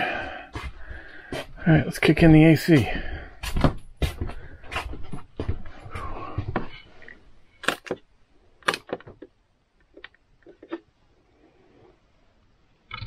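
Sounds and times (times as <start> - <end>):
sharp clicks and knocks: 7.6 - 10.9.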